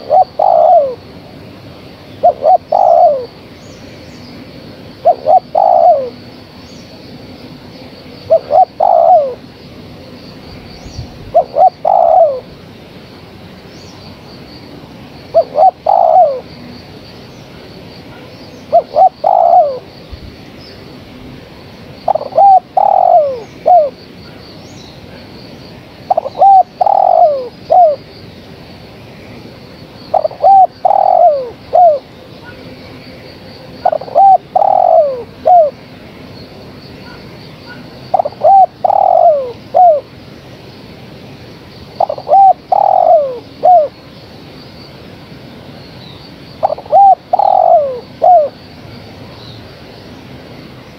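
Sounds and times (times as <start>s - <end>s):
dove cooing: 0.0s - 1.0s, 2.2s - 3.4s, 5.0s - 6.2s, 8.3s - 9.4s, 11.2s - 12.5s, 15.3s - 16.5s, 18.1s - 19.9s, 22.0s - 24.0s, 26.1s - 28.0s, 30.1s - 32.6s, 33.8s - 35.8s, 37.0s - 40.1s, 42.0s - 44.0s, 46.6s - 48.6s.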